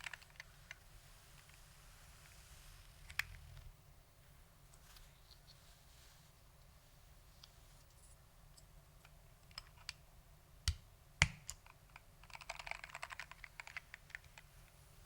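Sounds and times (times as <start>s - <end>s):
mechanical keyboard typing: 12.2s - 14.2s.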